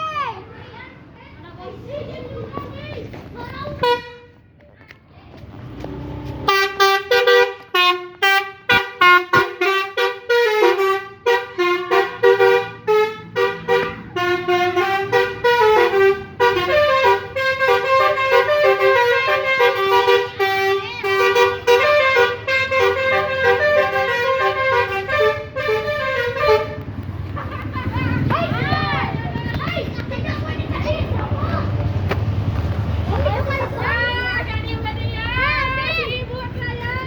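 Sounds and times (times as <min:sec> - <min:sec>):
multi-tone air horns playing tune: 0:06.4 - 0:27.0.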